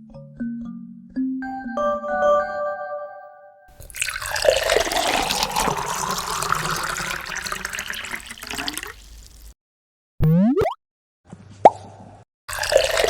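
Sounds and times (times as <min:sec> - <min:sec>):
tap water running into sink: 0:03.8 - 0:09.6, 0:12.5 - 0:13.0.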